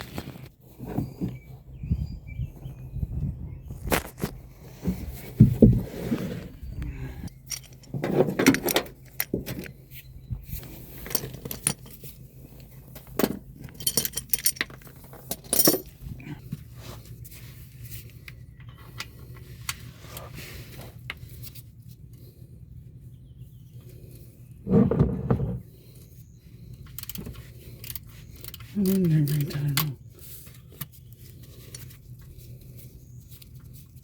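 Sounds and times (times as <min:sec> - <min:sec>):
metal hand tools clinking: 0:07.4 - 0:07.9, 0:13.6 - 0:16.0, 0:27.8 - 0:30.0.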